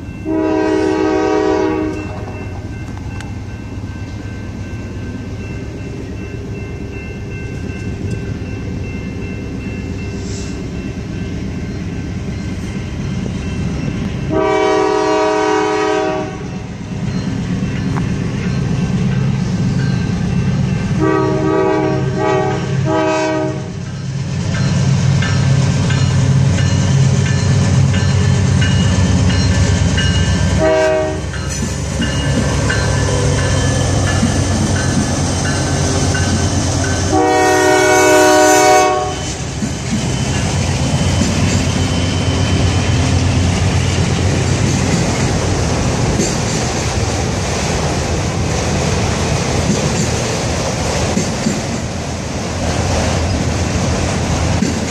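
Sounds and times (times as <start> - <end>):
diesel locomotive engine: 0.0 - 54.9
railcars rolling: 0.0 - 54.9
locomotive air horn blasts: 0.2 - 2.3, 14.3 - 16.6, 21.0 - 23.8, 30.6 - 31.3, 37.1 - 39.4.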